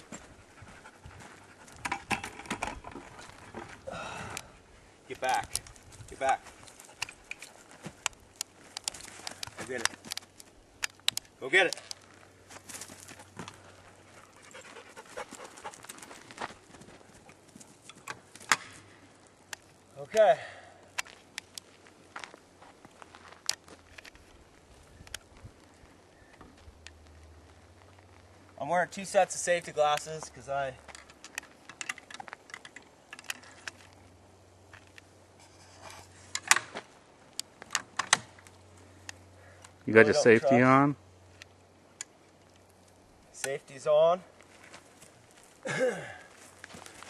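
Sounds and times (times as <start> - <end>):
dog panting: 0.0 - 1.8, 14.0 - 16.1
clicks and rattles of handling: 5.2 - 12.1, 30.8 - 34.0.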